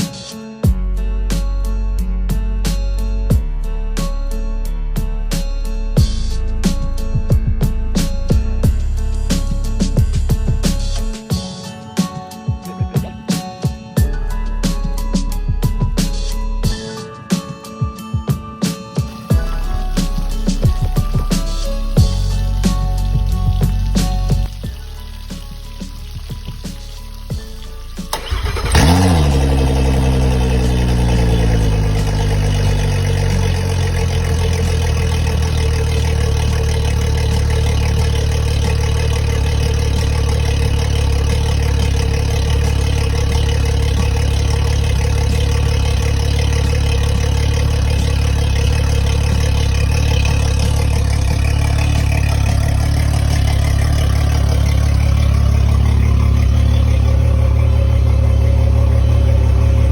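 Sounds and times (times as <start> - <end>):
outboard engine starting and idling: 19.1 - 59.9.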